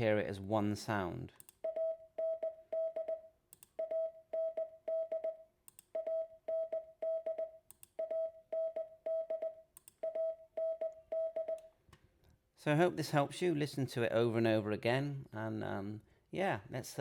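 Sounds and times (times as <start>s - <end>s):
morse code beeps: 1.6s - 5.4s, 6.0s - 11.6s.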